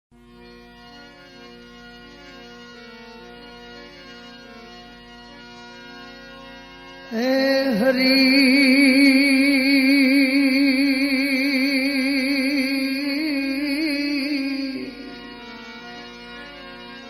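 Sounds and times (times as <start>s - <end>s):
harmonium drone: 0.1s - 17.0s
person singing with vibrato: 7.1s - 15.7s.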